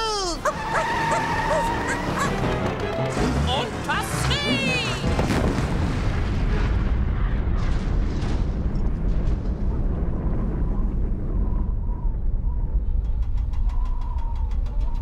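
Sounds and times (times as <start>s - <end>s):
building collapsing crash: 5.1s - 11.9s
rumble of falling debris: 5.1s - 13.8s.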